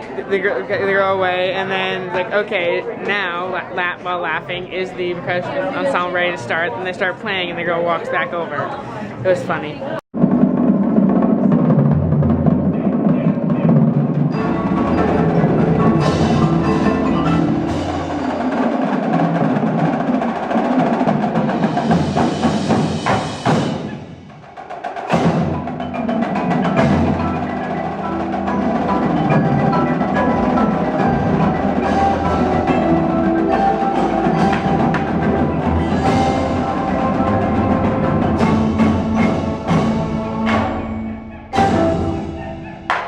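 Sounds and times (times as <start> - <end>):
drums playing: 9.2 - 43.0
mallet keyboards playing: 13.1 - 23.7, 25.1 - 43.0.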